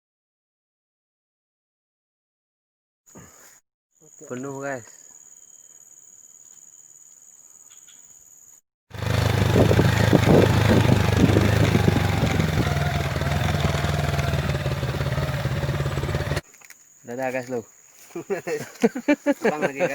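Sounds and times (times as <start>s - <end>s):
insects buzzing: 4.0s - 19.9s
motorcycle engine running: 8.9s - 16.4s.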